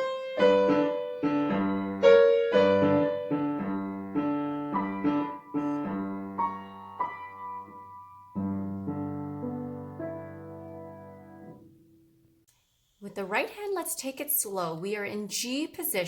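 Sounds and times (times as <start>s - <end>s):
piano melody over bass notes: 0.0s - 12.4s.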